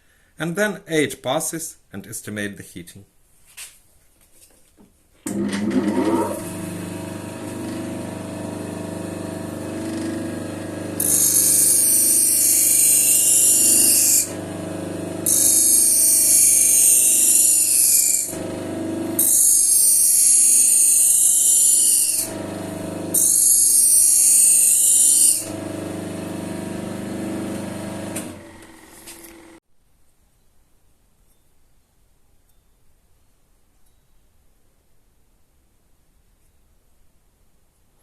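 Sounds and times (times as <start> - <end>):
motor humming: 5.3 - 19.3, 20.6 - 29.6
motor winding down: 5.3 - 29.6.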